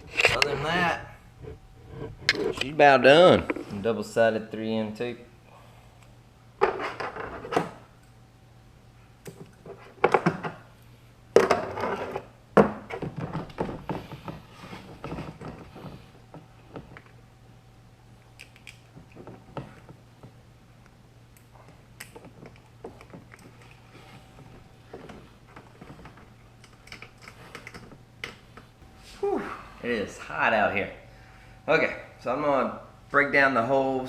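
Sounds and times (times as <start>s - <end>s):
rustling and scraping: 0.0s - 4.1s, 6.6s - 7.8s, 11.4s - 17.2s, 21.6s - 29.2s
steady low hum: 0.0s - 34.0s.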